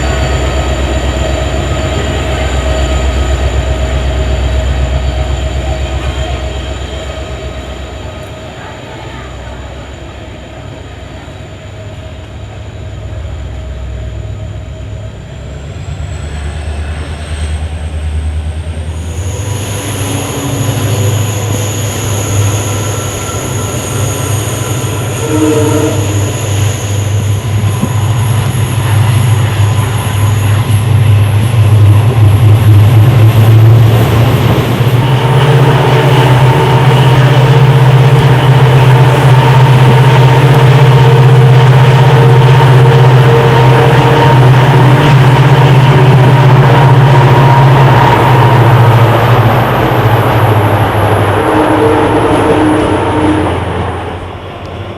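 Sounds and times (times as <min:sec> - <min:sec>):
passenger train running: 0:00.0 - 0:54.9
high-pitched wheel squealing: 0:18.9 - 0:31.0, 0:33.6 - 0:54.9.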